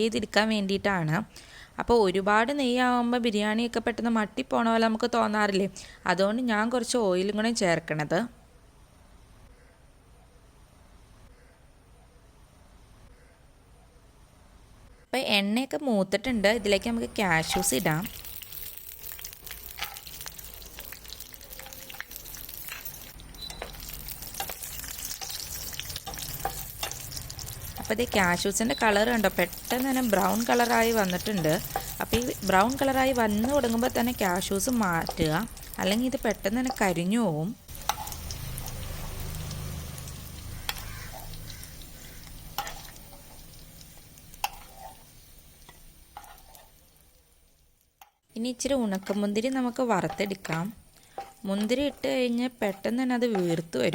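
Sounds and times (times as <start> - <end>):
nuts sizzling in oil: 16.3 - 53.9
crackles and clicks: 17.4 - 37.0, 37.7 - 47.2.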